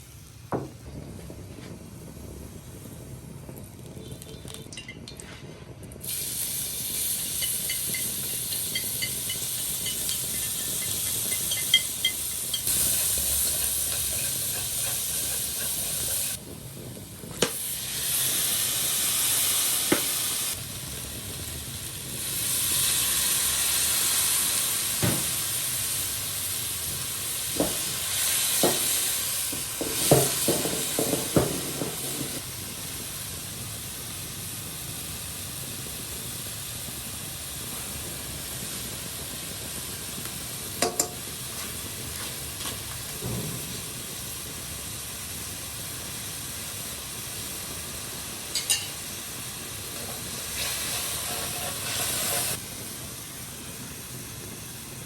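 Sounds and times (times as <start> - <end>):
food sizzling in a pan: 0.0 - 55.0
utensil clinking on pan: 7.3 - 12.8, 40.8 - 41.2, 48.5 - 49.0.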